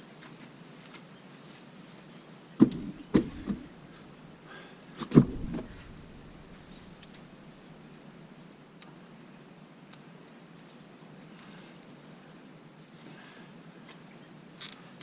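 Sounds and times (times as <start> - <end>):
knocks and clunks of tools: 2.6 - 4.0, 5.0 - 7.2.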